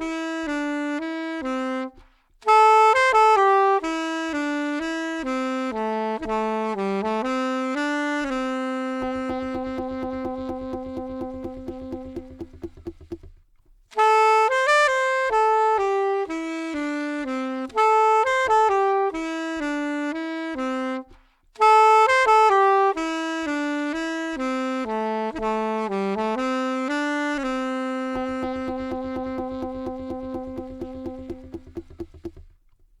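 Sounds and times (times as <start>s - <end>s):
saxophone slow melody: 0.0s - 32.6s
low rhythmic pulse: 7.2s - 13.6s, 27.4s - 32.6s.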